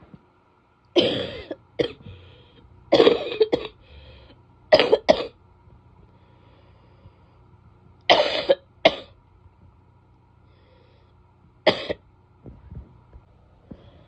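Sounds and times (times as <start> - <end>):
woman coughing: 1.0 - 2.0, 2.9 - 3.8, 4.7 - 5.4, 8.1 - 9.2, 11.7 - 12.0.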